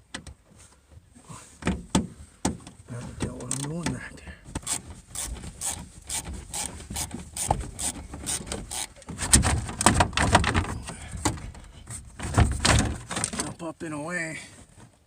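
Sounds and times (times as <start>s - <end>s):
screwdriver clicks and scraping: 4.6s - 9.1s.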